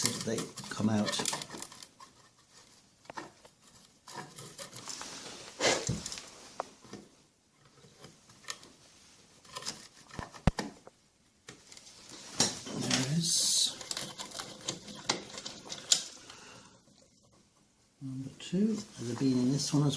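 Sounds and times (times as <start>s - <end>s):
screwdriver scraping and clicking: 0.0s - 5.0s, 9.4s - 10.8s, 12.7s - 16.2s.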